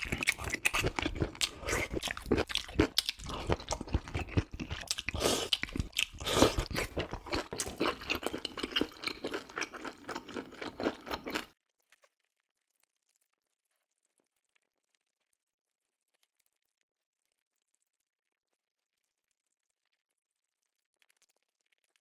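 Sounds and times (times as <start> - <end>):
person chewing food: 0.0 - 11.5.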